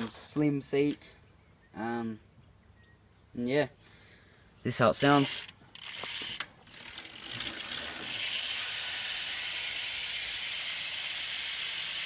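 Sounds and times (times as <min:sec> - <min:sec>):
bicycle hub ratcheting buzz: 0:05.0 - 0:12.0.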